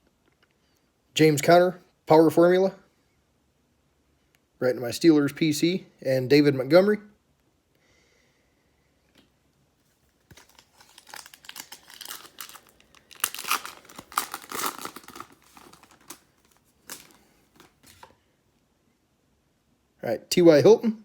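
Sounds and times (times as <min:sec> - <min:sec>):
foil wrapper tearing and crinkling: 0:10.3 - 0:18.1.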